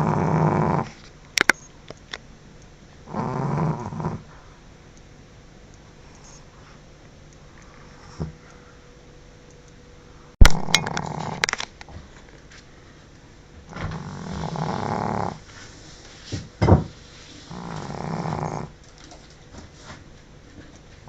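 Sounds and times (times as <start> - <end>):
dog snoring: 0.0 - 1.0, 3.0 - 4.5, 10.9 - 11.4, 13.7 - 15.5, 17.4 - 18.8
dog snorting: 0.0 - 1.0, 3.1 - 4.4, 13.7 - 15.5, 17.4 - 18.8.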